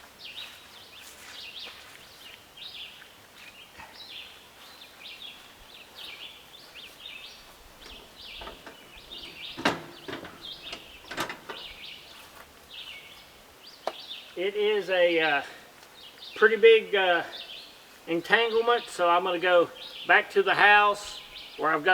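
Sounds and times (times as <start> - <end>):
birds chirping: 0.2 - 21.9.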